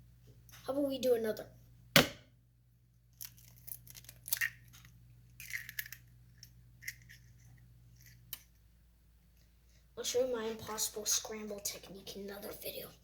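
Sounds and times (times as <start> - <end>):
faint low hum: 0.0 - 13.0
egg shell cracking: 3.1 - 8.5.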